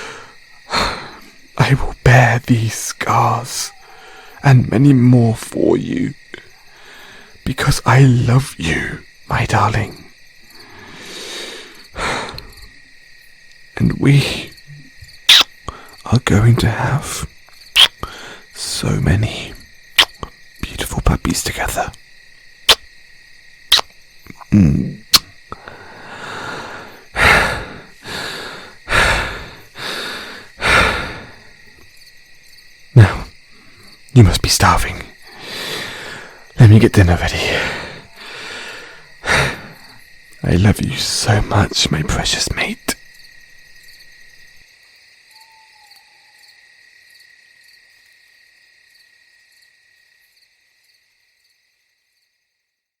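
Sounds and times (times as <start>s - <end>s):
man breathing heavily: 0.0s - 1.4s, 3.8s - 4.4s, 6.5s - 7.4s, 10.4s - 12.7s, 18.0s - 18.5s, 25.5s - 31.8s, 35.2s - 36.6s, 37.2s - 40.0s
crickets chirring: 0.0s - 53.0s.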